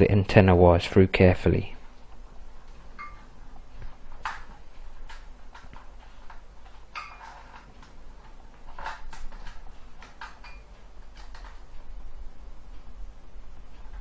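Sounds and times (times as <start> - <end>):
laptop plastic parts clicking and rattling: 3.8 - 11.8.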